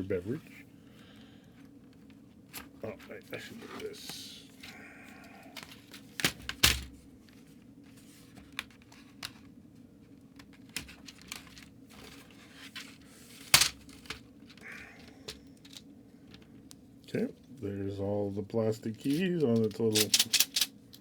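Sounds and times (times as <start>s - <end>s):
plastic keyboard clicks and knocks: 19.6s - 21.0s.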